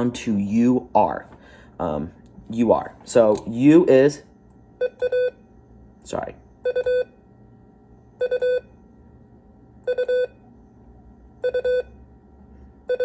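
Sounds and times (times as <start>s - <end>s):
morse code beeps: 4.8s - 5.4s, 6.6s - 7.1s, 8.2s - 8.7s, 9.9s - 10.4s, 11.4s - 12.0s.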